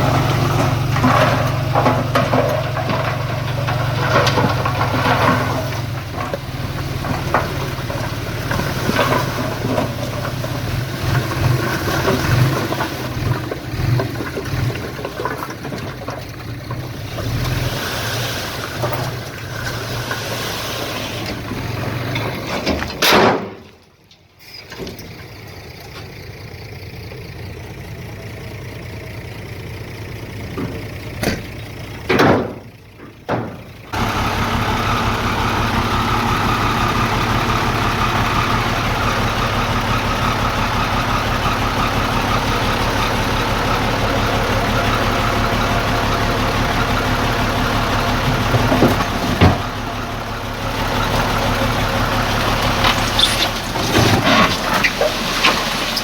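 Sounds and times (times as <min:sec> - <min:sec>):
knocks and clanks: 0:00.0 - 0:17.3, 0:21.2 - 0:23.8, 0:30.4 - 0:34.1, 0:47.7 - 0:49.8
heavy machinery diesel engine: 0:00.0 - 0:56.0.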